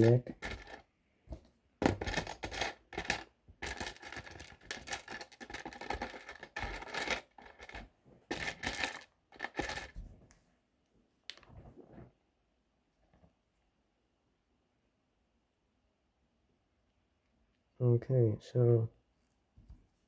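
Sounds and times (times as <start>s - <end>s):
plastic bricks clicking and rattling: 0.0s - 0.8s, 1.8s - 10.0s.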